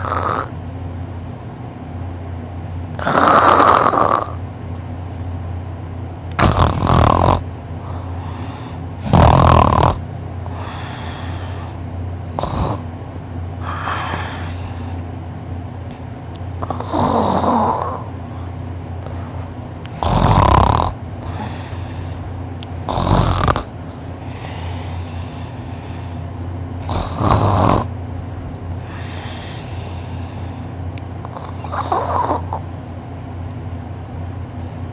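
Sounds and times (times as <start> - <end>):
man snoring heavily: 0.0 - 0.5, 3.0 - 4.4, 6.4 - 7.5, 8.1 - 11.8, 12.4 - 12.9, 13.6 - 14.9, 16.6 - 18.1, 19.9 - 22.2, 22.8 - 26.0, 26.8 - 27.9, 31.3 - 32.6
steady low hum: 0.0 - 34.9.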